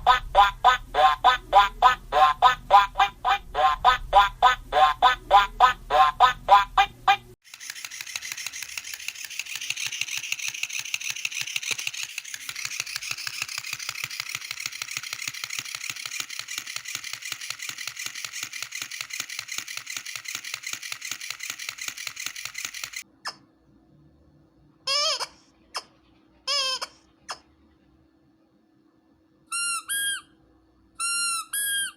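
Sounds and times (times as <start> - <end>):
dog toy mechanical ticking: 0.0 - 23.1.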